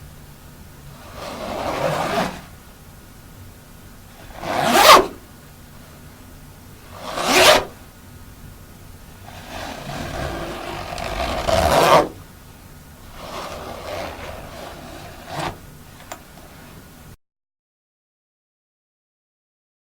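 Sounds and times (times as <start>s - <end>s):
jacket zipper being pulled: 1.0s - 2.6s, 4.2s - 5.2s, 6.9s - 7.8s, 9.2s - 12.2s, 13.1s - 16.9s
zipper click: 1.0s - 2.6s, 4.2s - 5.2s, 6.9s - 7.8s, 9.2s - 12.2s, 13.1s - 16.8s.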